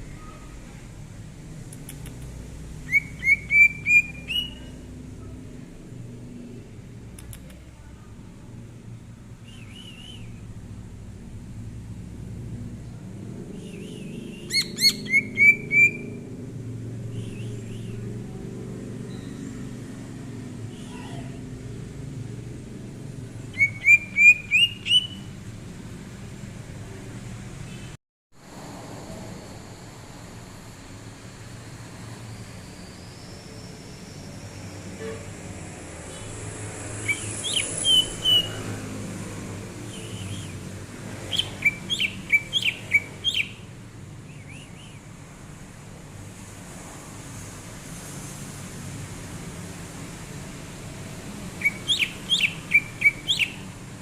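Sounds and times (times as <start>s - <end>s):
bird whistling upward notes: 2.9s - 4.7s, 9.4s - 10.4s, 13.7s - 16.2s, 23.5s - 25.3s, 37.0s - 38.6s, 39.9s - 40.6s, 41.3s - 43.6s, 51.6s - 53.7s.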